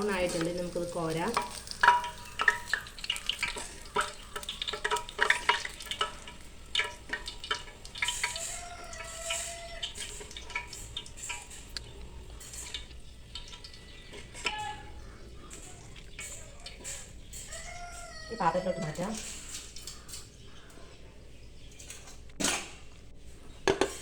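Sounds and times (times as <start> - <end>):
onions sizzling in hot oil: 0.0 - 19.7
metal spoon clinking on pan: 0.1 - 11.8.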